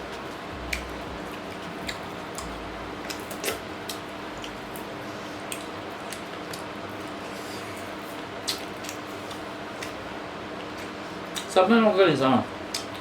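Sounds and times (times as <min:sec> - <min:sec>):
faint hum: 0:00.0 - 0:11.5
wet mouth smacking and chewing: 0:00.1 - 0:07.2, 0:08.4 - 0:10.0.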